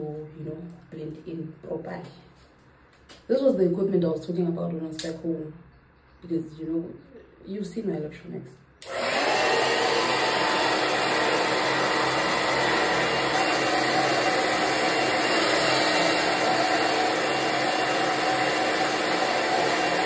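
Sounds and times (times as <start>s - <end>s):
hair dryer whirring: 8.8s - 20.0s.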